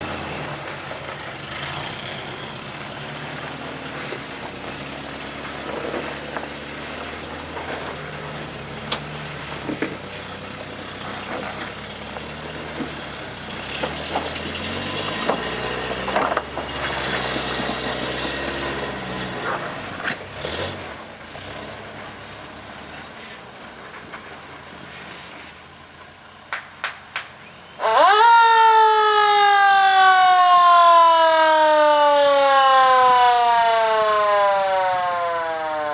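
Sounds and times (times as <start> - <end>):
buggy engine at low revs: 0.0 - 30.2
siren-like wail: 27.8 - 35.9.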